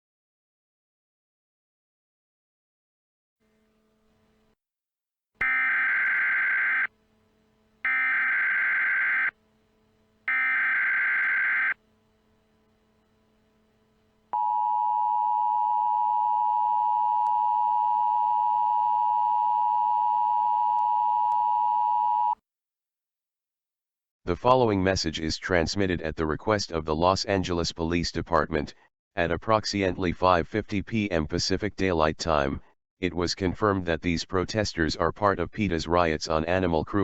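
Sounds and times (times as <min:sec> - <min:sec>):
data bursts: 0:05.4 - 0:06.9, 0:07.9 - 0:09.4, 0:10.3 - 0:11.8
two-tone attention signal: 0:05.4 - 0:06.9, 0:07.9 - 0:09.4, 0:10.3 - 0:11.8.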